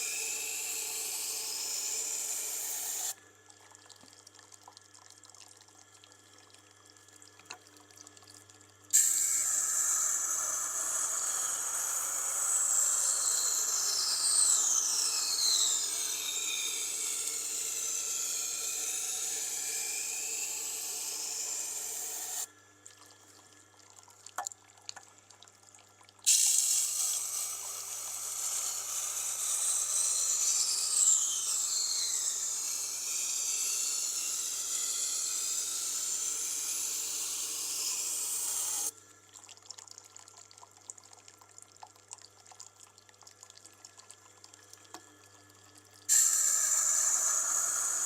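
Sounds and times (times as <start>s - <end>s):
sharpener motor hum: 0.0s - 3.2s, 9.0s - 22.5s, 26.3s - 38.9s, 46.1s - 48.0s.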